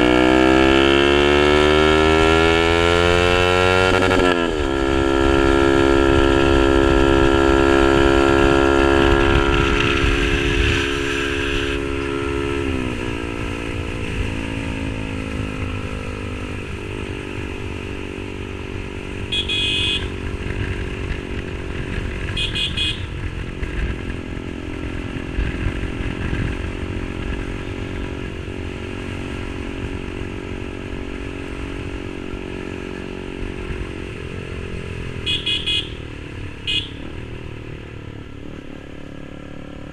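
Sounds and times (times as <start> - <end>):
motorcycle engine revving: 0.0 - 39.9
horn toots: 9.2 - 12.5, 19.3 - 20.4, 22.3 - 23.3, 35.2 - 37.2.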